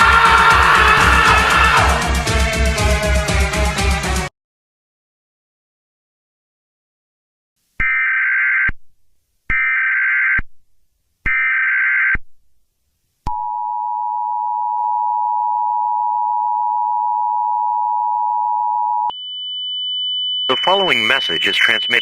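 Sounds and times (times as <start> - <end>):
two-tone attention signal: 20.5 - 22.0.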